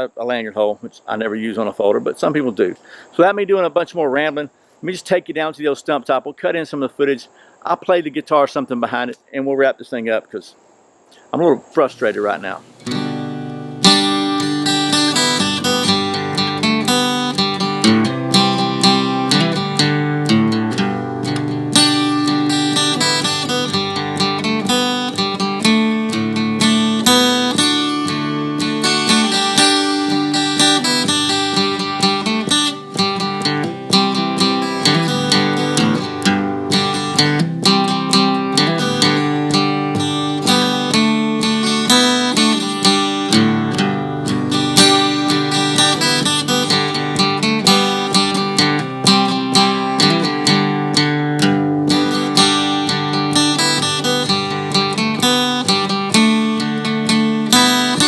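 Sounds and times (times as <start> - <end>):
acoustic guitar music: 11.8 - 58.0.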